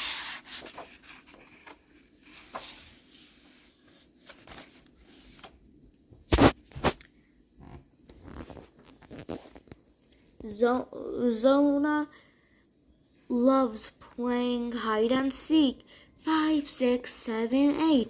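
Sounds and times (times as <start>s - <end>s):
paper pages rustling: 0.0s - 5.6s, 8.1s - 9.8s.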